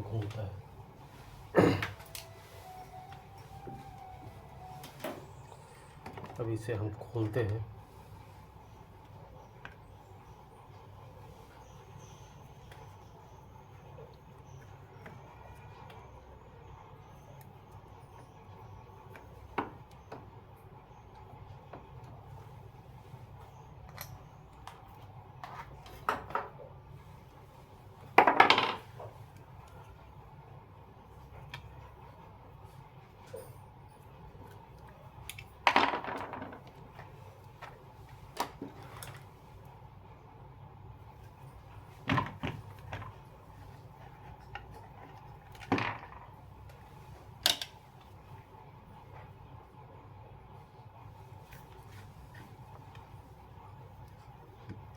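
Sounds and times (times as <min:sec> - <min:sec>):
tools and parts knocking: 0:28.2 - 0:28.9.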